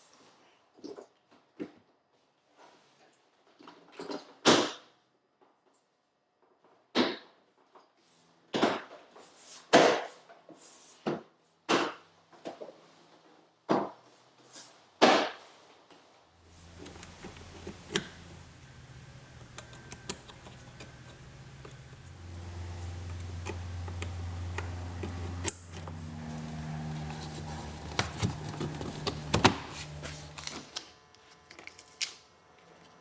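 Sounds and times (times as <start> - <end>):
steady low hum: 16.4 - 30.7
faint ticking: 16.5 - 30.4.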